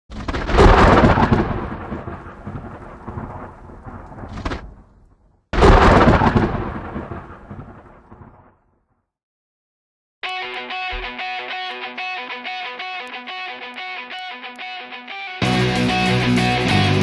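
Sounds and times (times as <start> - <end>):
thunder-like booms: 0.1 - 8.6.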